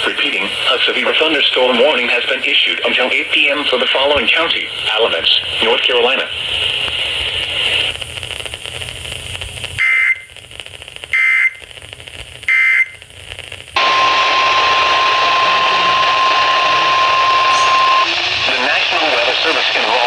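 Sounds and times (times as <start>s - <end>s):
radio hiss: 0.0s - 20.0s
screeching digital data bursts: 13.8s - 20.0s
steady alarm tone: 13.8s - 20.0s.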